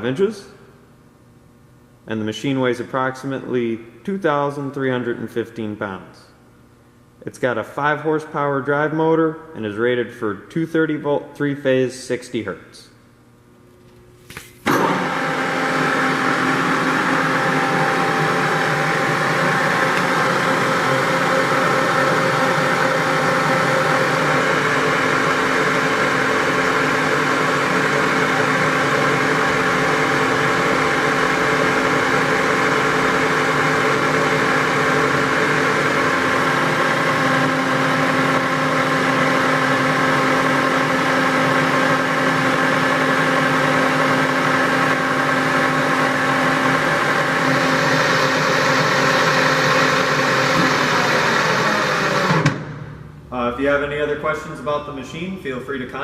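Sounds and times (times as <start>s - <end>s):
lathe motor whining: 14.7s - 52.8s.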